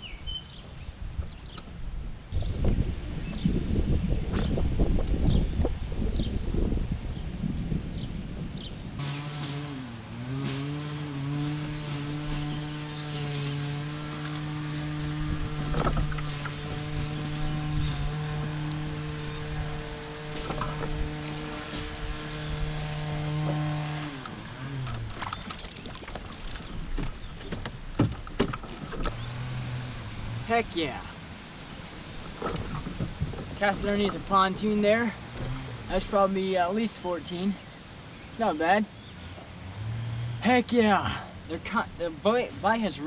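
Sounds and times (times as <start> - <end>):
electric trolling motor humming: 9.0 - 27.5, 28.2 - 36.2, 39.4 - 40.8
sharp clicks and knocks: 24.2 - 29.3.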